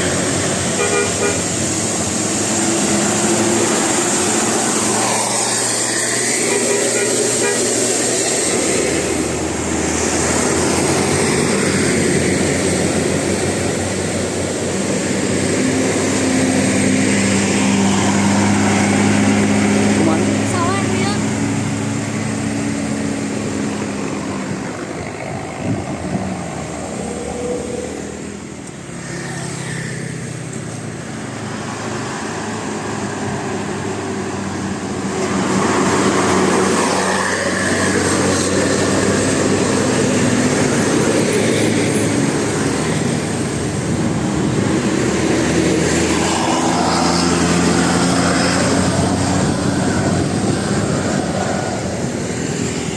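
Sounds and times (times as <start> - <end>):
heavy vehicle engines: 0.0 - 52.9.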